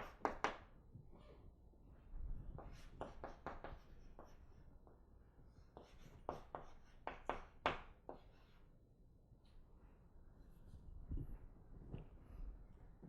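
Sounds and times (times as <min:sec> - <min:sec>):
pen scratching on paper: 0:05.8 - 0:07.0.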